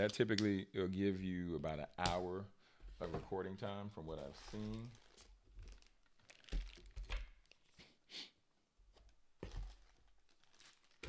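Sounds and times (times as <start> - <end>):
packaging rustling: 4.2 - 7.7, 9.4 - 11.0.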